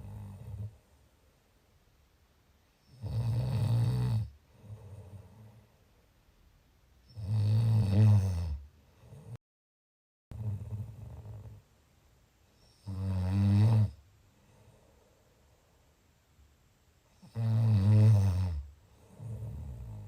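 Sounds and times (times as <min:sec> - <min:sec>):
loud low snoring: 0:00.0 - 0:00.8, 0:02.9 - 0:05.6, 0:07.1 - 0:09.4, 0:10.3 - 0:11.6, 0:12.8 - 0:14.0, 0:17.2 - 0:20.0
quieter breath: 0:14.2 - 0:16.2.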